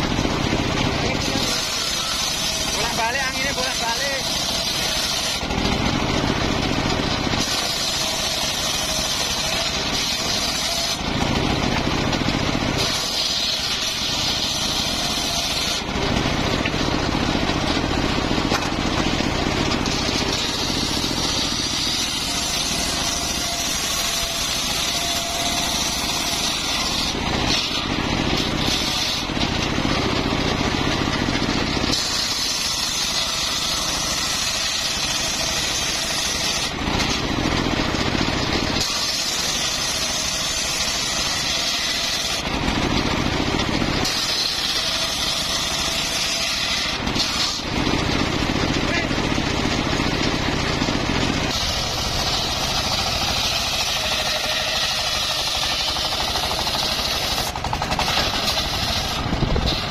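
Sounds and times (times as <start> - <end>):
circular sawmill sawing a log: 0.0 - 59.9.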